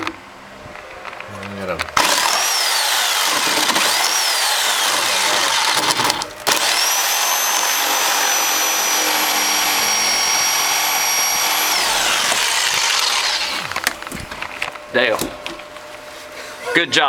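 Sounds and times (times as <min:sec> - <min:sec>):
saw blade rasping in wood: 0:02.0 - 0:13.9
reciprocating saw motor whine: 0:02.0 - 0:14.1.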